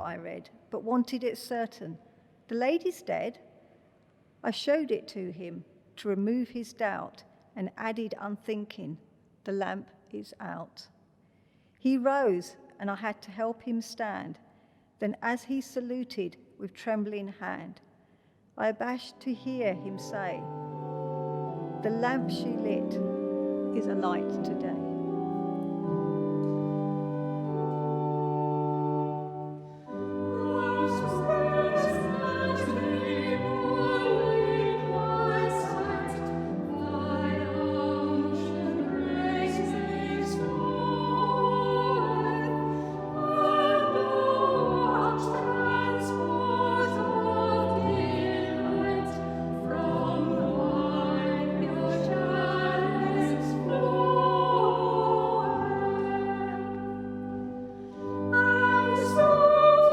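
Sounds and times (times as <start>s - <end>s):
instrumental accompaniment: 19.7s - 59.9s
choir singing: 29.9s - 59.9s.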